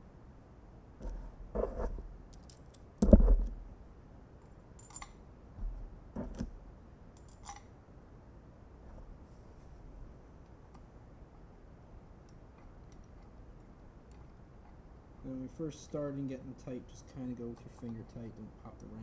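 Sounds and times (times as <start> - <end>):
metallic clinks of screws and key: 2.3 - 3.3, 4.8 - 5.2, 7.2 - 7.7.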